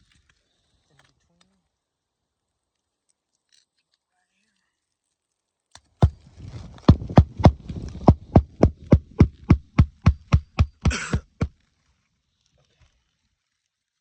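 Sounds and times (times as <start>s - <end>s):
hammer driving nail: 6.9s - 11.5s.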